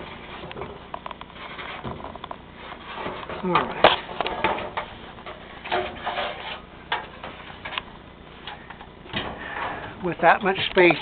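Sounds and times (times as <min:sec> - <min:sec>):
handling scrapes and rustles: 0:00.0 - 0:08.7
low steady background noise: 0:00.0 - 0:11.0.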